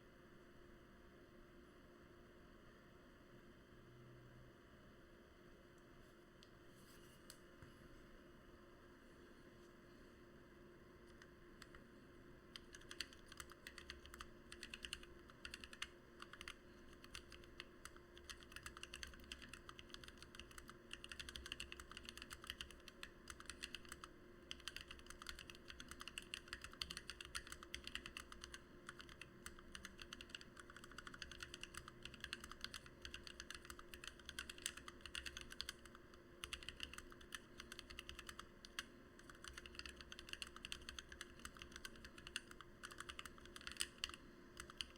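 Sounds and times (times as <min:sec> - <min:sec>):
mechanical keyboard typing: 0:12.5 - 0:44.9.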